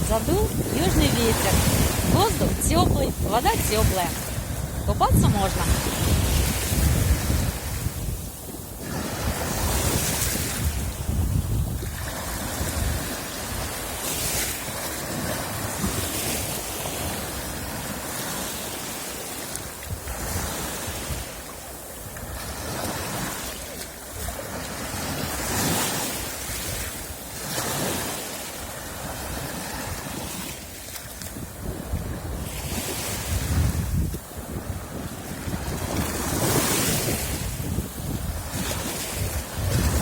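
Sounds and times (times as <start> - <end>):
wind buffeting microphone: 0.0 - 19.0, 19.6 - 40.0
waves washing on shore: 0.0 - 40.0.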